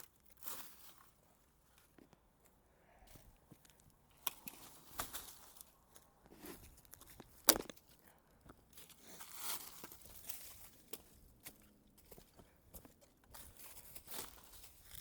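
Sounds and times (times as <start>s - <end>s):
dry leaves crunching underfoot: 0.0s - 1.2s, 4.1s - 8.0s, 8.7s - 15.0s
twigs snapping: 3.7s - 8.0s.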